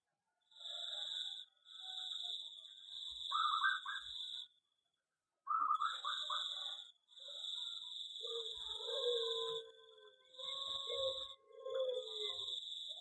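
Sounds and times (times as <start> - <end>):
doves cooing: 10.4 - 12.5.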